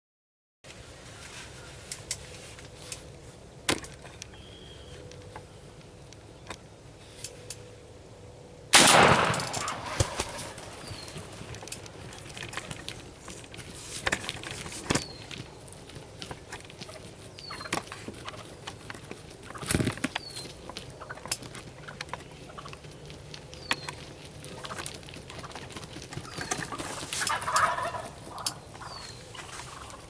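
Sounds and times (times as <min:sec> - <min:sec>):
wild turkey gobbling: 0:20.6 - 0:23.1, 0:23.7 - 0:30.0.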